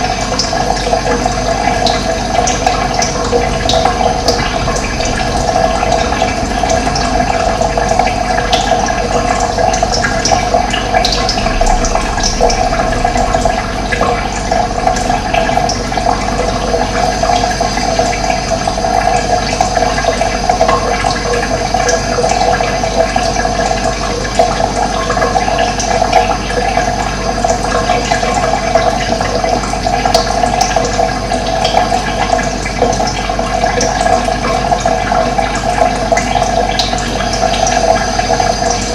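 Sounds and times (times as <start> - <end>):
water rushing: 0.0 - 30.6.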